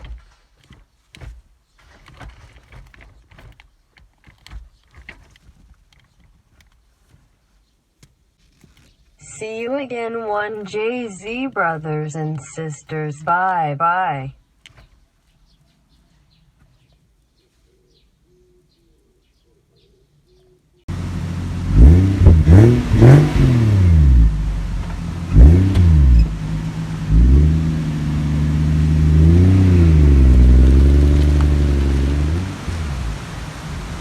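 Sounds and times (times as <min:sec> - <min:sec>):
car engine revving: 0:20.9 - 0:34.0.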